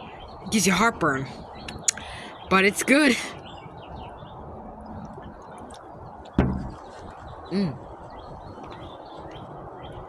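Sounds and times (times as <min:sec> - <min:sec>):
small birds chirping: 0:00.0 - 0:10.0
steady outdoor hiss: 0:00.0 - 0:10.0
sharp thump: 0:06.4 - 0:06.8.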